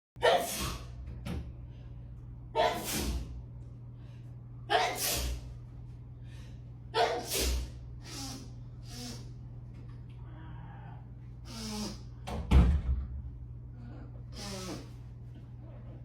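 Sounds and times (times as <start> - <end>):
person sneezing: 0.2 - 1.0, 2.6 - 3.3, 4.7 - 5.5, 7.0 - 9.2, 14.4 - 14.9.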